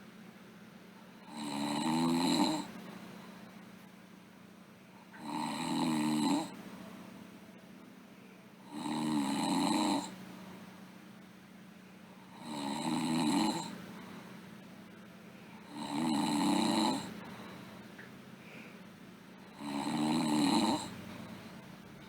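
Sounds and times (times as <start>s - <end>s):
girl snoring: 1.2s - 2.8s, 5.2s - 6.6s, 8.7s - 10.2s, 12.3s - 13.8s, 15.6s - 17.2s, 19.5s - 21.0s.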